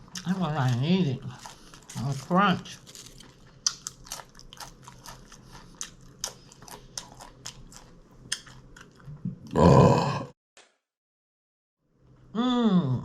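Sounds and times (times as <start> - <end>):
crunchy chewing: 0.1 - 9.2
vocal groan: 9.3 - 10.4, 12.4 - 13.0.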